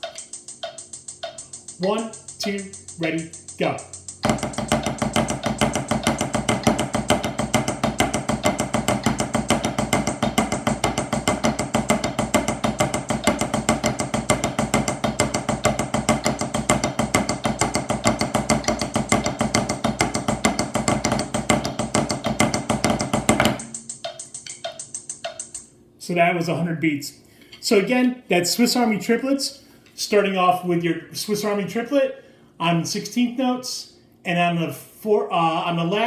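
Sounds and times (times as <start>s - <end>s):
drumsticks playing rudiment: 0.0s - 25.7s.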